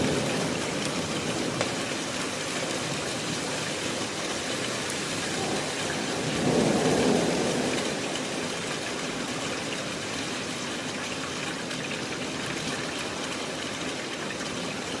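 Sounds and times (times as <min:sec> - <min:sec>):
rain and hail falling: 0:00.0 - 0:15.0.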